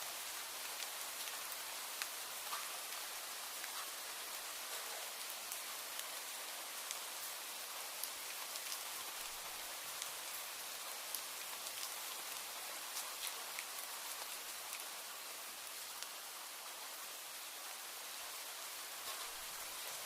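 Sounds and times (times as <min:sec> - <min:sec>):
steady rainfall: 0:00.0 - 0:20.0
sharp raindrop ticks: 0:00.6 - 0:04.0, 0:06.8 - 0:07.1, 0:08.0 - 0:10.2, 0:19.0 - 0:20.0.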